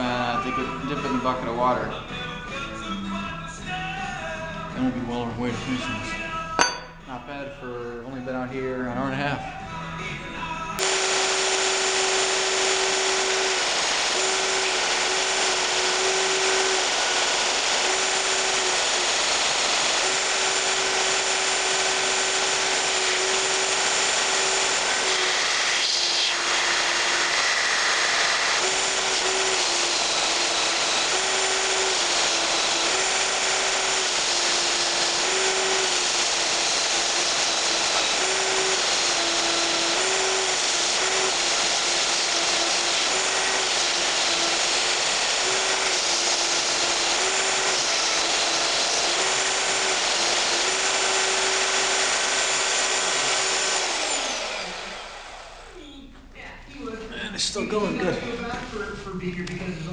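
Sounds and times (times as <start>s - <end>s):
belt sander grinding steel: 10.8s - 55.8s.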